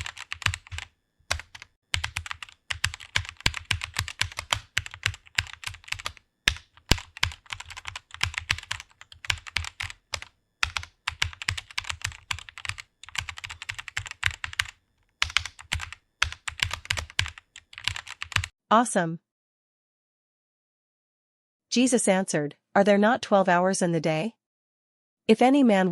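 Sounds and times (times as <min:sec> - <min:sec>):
computer keyboard typing: 0:00.0 - 0:18.5.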